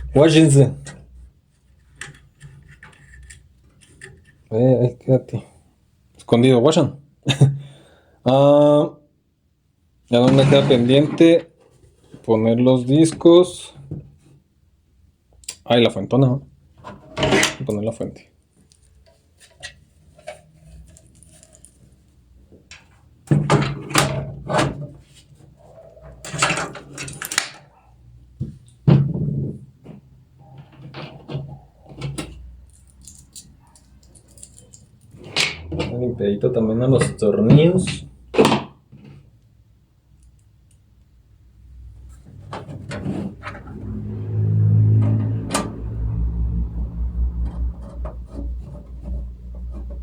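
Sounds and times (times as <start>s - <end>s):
metal hardware clanking and rattling: 26.1s - 27.6s.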